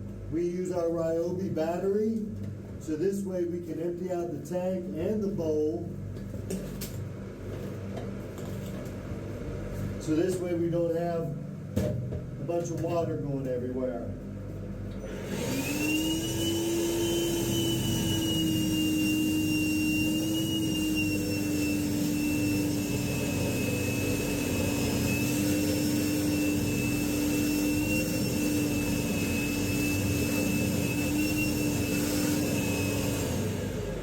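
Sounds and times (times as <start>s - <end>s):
shop vac whine: 0.0s - 34.0s.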